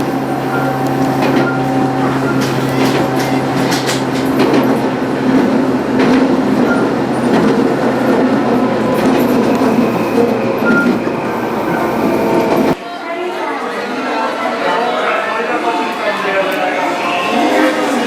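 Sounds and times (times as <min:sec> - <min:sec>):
electric train rumbling: 0:00.0 - 0:12.8, 0:15.0 - 0:18.0
train hum: 0:00.0 - 0:12.8.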